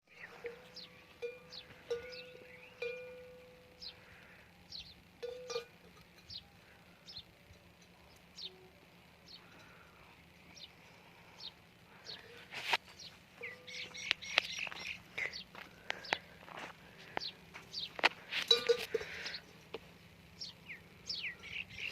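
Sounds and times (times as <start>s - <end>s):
bird chirping: 0.1s - 9.8s, 10.4s - 16.3s, 17.0s - 19.5s, 20.3s - 21.9s
animal bell clinking: 5.2s - 6.5s, 18.4s - 19.4s.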